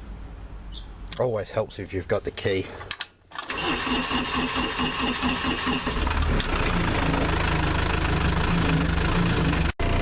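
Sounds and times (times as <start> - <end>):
forklift engine idling: 3.4 - 10.0.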